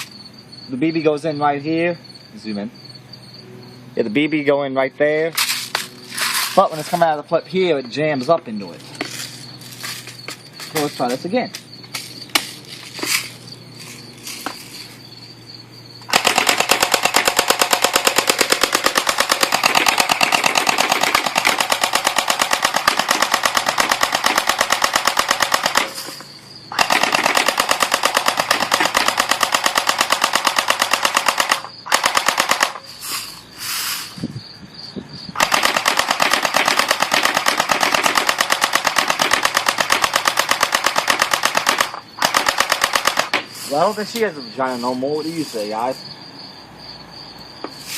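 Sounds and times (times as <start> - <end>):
bb gun firing full auto: 16.1 - 32.9, 35.4 - 43.5.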